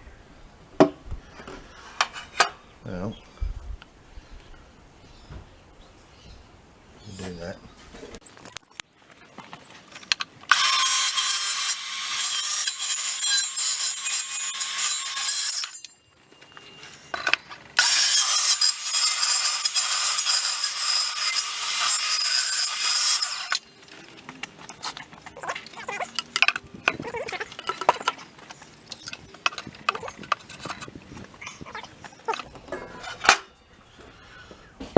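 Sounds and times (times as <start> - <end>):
electric jigsaw cutting wood: 10.5 - 15.8, 17.8 - 23.6.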